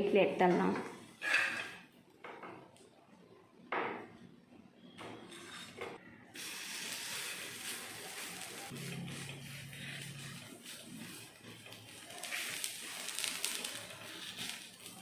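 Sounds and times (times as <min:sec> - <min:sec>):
spatula scraping a hot griddle: 0:01.2 - 0:01.8, 0:05.2 - 0:05.8, 0:06.4 - 0:15.0
sizzling hiss: 0:06.4 - 0:15.0.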